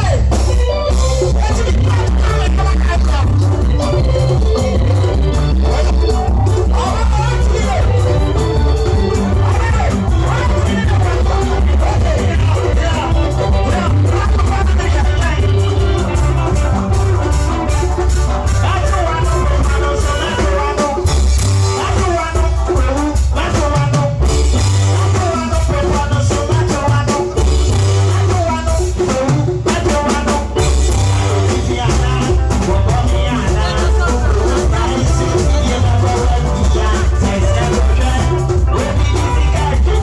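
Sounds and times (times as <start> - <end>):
heavy bass beat: 0.0 - 40.0
music with singing: 0.0 - 40.0.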